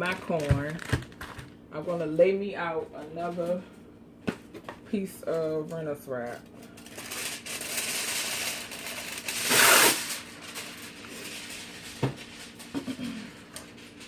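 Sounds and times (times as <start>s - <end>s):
aluminium foil crinkling: 0.0s - 1.5s, 5.4s - 14.0s
foil tearing: 6.7s - 14.0s.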